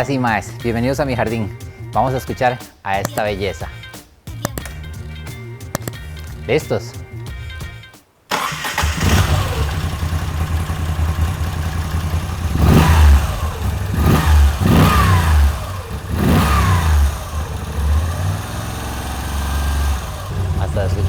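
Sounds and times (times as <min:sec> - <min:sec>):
motorcycle engine idling and revving: 0:08.4 - 0:21.0.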